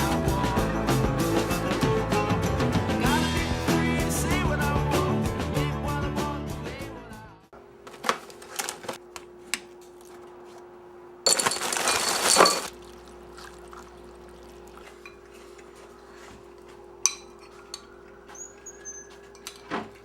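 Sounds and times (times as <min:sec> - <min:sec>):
glass and dishes clinking: 0:11.3 - 0:12.7, 0:14.9 - 0:15.8, 0:17.0 - 0:20.0
liquid pouring: 0:11.3 - 0:16.0.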